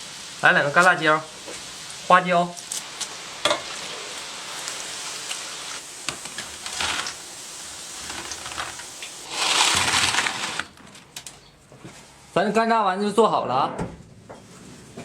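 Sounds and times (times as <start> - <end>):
meatballs sizzling in hot oil: 0.0 - 10.5.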